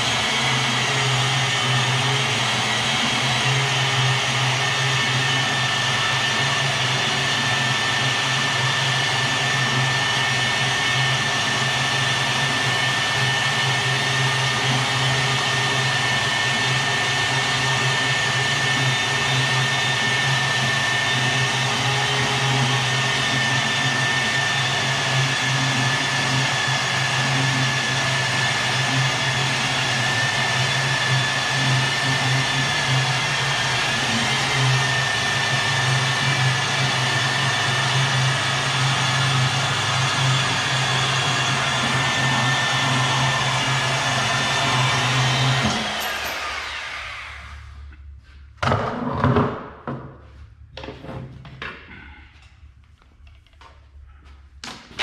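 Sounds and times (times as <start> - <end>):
machine motor humming: 31.1 - 47.4.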